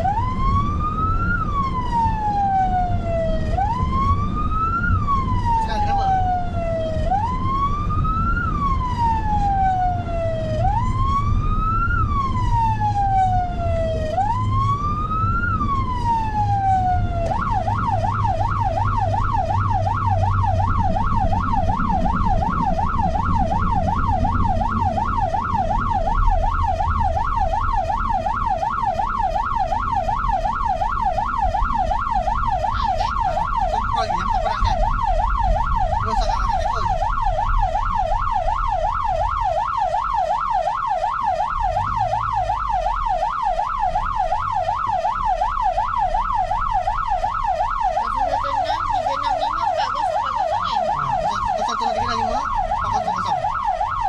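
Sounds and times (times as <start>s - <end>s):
emergency siren wail and yelp: 0.0s - 54.0s
low rumble: 17.5s - 27.4s.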